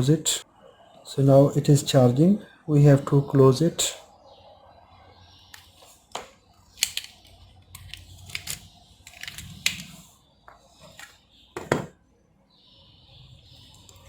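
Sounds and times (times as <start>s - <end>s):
plastic controller parts clicking: 6.8s - 10.0s.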